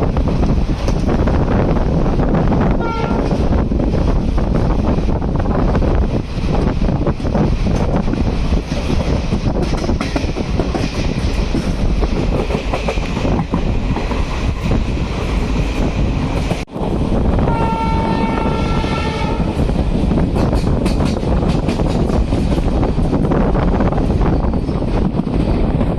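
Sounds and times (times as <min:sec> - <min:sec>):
rail clatter: 0:00.0 - 0:25.9
train rumbling on rails: 0:00.0 - 0:25.9
wind noise: 0:00.0 - 0:25.9
train horn: 0:02.8 - 0:03.4, 0:17.4 - 0:19.6.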